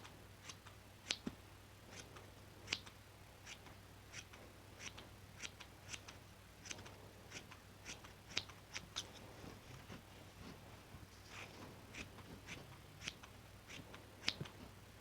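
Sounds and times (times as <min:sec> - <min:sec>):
scissors snipping: 0:11.9 - 0:14.6.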